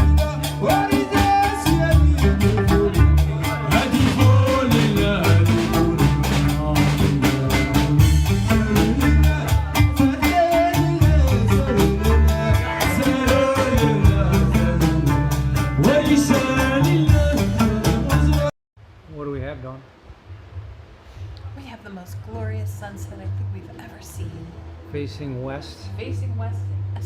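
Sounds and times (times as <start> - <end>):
person singing: 0.0 - 18.5
plucked bass line: 0.0 - 18.5.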